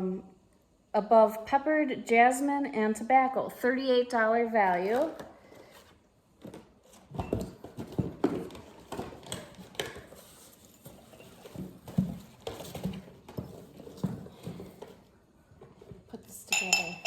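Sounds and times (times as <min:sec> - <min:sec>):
packaging being unpacked by hand: 0:04.8 - 0:15.1.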